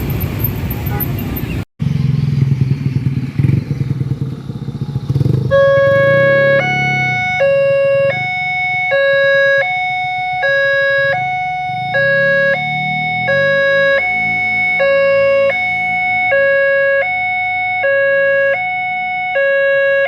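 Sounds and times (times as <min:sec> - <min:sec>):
level-crossing two-tone warning siren: 0:05.5 - 0:20.0.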